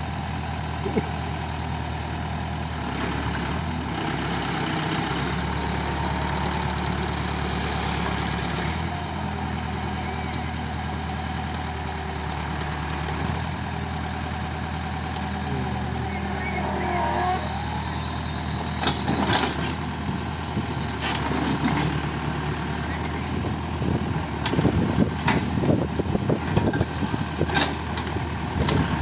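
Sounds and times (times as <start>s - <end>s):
backhoe diesel engine: 0.0s - 29.0s.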